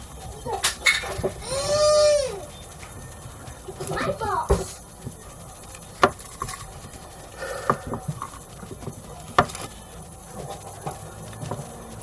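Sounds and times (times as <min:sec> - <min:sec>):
sharp clicks and taps: 0:02.4 - 0:11.8.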